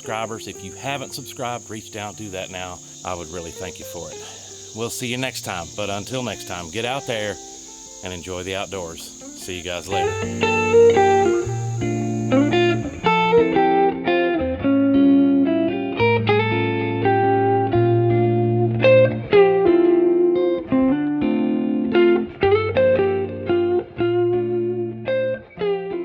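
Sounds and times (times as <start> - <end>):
plucked guitar tune: 0.0 - 26.0
bass line: 9.8 - 13.7.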